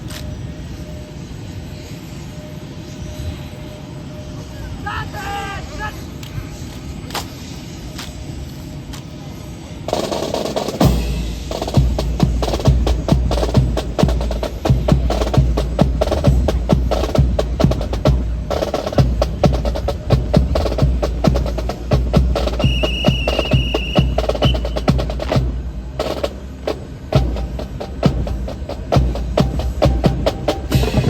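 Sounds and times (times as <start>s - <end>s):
marching snare drum rolls: 9.9s - 31.0s
bass drum beat: 10.8s - 26.3s, 27.1s - 31.0s.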